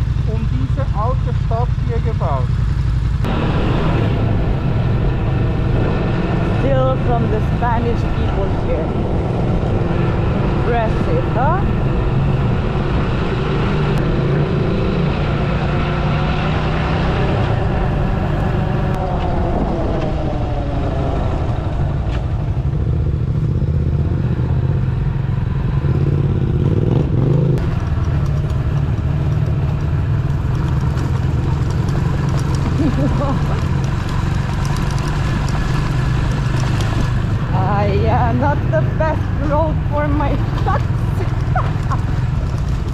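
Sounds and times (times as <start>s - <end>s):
motorcycle engine running: 0.0s - 42.9s.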